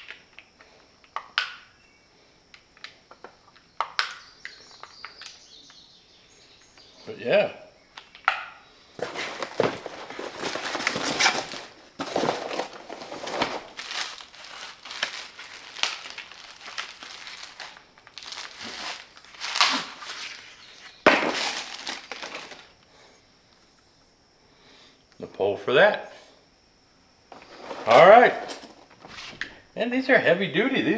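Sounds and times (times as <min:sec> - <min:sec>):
packaging crinkling and rustling: 0:09.0 - 0:22.8, 0:27.3 - 0:29.6.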